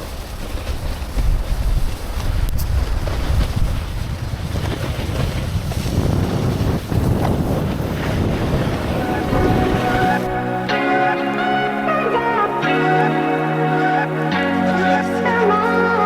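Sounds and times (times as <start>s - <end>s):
wind buffeting microphone: 0.0s - 11.7s
music: 9.0s - 16.0s.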